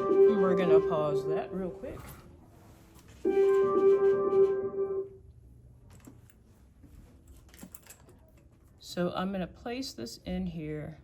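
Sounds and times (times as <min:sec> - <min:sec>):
held musical note: 0:00.0 - 0:01.8, 0:03.2 - 0:05.2.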